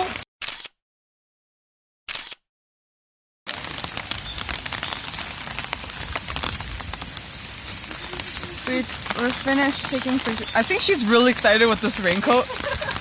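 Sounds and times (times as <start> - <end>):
brief clipped sound: 0.1 - 0.8, 2.1 - 2.5
steady rain falling: 3.5 - 13.0.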